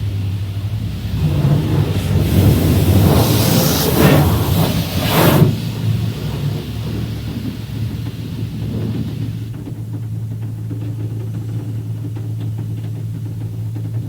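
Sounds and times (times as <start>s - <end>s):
high-pressure water spray hissing: 0.0s - 9.6s
low machine hum: 0.0s - 14.0s.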